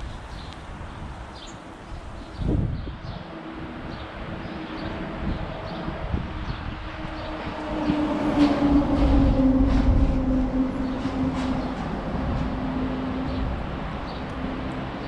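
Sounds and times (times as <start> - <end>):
vehicle engine passing by: 4.4 - 15.0.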